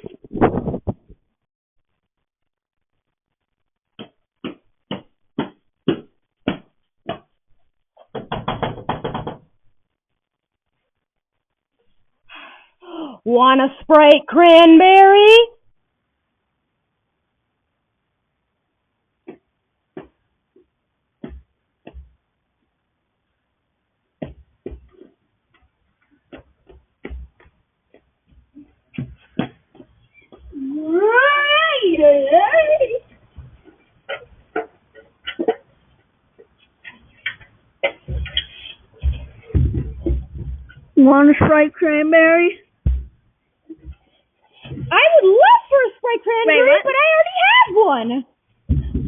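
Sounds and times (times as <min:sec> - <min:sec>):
sharp knocks on door: 0:08.1 - 0:09.5.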